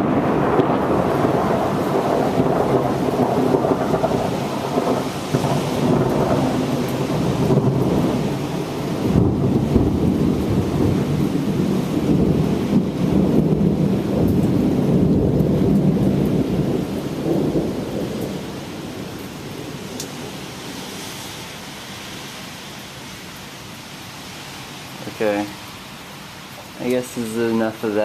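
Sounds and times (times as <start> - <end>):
thunder rolling: 0.0 - 20.4
heavy rain: 0.0 - 28.0.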